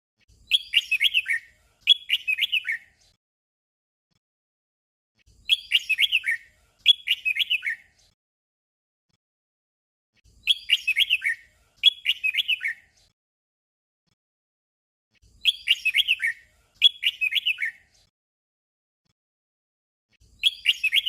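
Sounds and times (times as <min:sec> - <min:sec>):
bird singing short phrase: 0:00.4 - 0:03.0, 0:05.3 - 0:08.0, 0:10.4 - 0:13.0, 0:15.2 - 0:18.0, 0:20.2 - 0:21.0.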